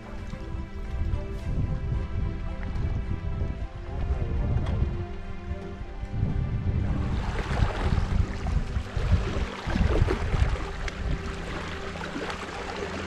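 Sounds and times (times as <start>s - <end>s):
wind rumbling on microphone: 0.0s - 13.0s
sea waves splashing: 6.8s - 13.0s.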